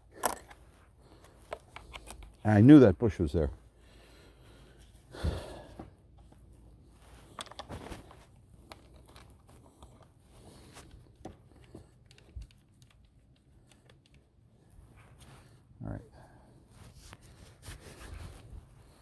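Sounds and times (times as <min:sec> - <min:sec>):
clothing rustling and crinkling: 0:03.5 - 0:15.8, 0:16.5 - 0:19.0.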